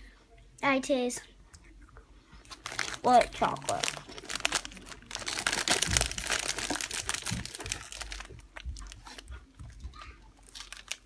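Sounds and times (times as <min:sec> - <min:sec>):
plastic packaging crinkling: 0:02.4 - 0:11.0.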